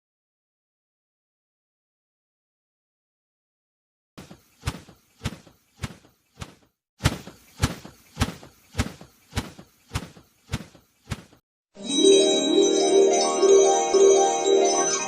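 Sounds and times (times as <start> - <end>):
sharp knocks: 4.2 - 11.4.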